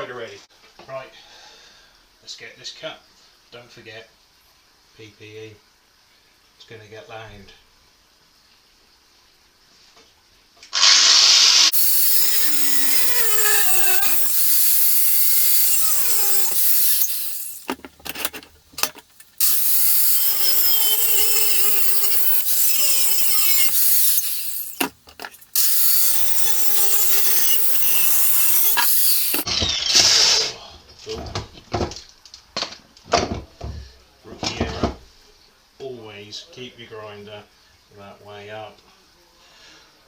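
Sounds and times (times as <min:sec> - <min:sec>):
angle grinder cutting steel: 0:10.8 - 0:29.5.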